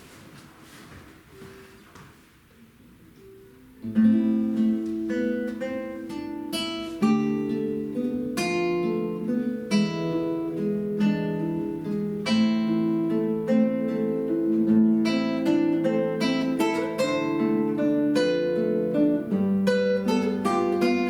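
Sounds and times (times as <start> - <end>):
acoustic guitars playing: 2.8 - 21.0.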